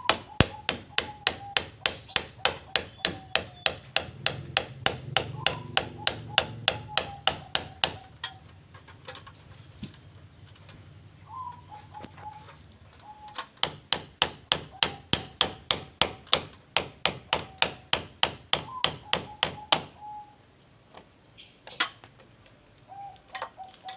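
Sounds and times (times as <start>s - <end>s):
hammer striking metal bodywork: 0.0s - 8.4s, 13.6s - 20.0s.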